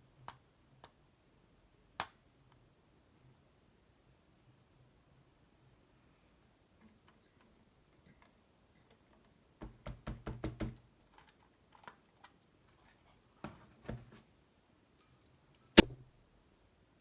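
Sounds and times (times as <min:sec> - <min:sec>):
sharp click: 0:15.8 - 0:16.0.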